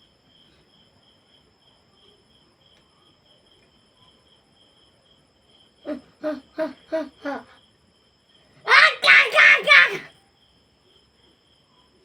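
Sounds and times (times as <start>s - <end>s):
crickets chirping: 0.0s - 12.0s
person's voice in short bursts: 8.7s - 10.1s.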